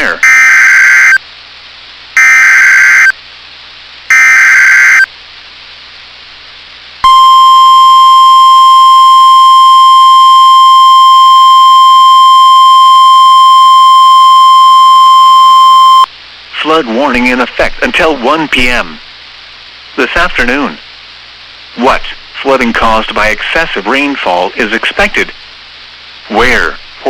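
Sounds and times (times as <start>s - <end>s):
steady warning alert tone: 0.0s - 1.2s
digital data bursts: 2.2s - 3.2s, 4.1s - 5.1s.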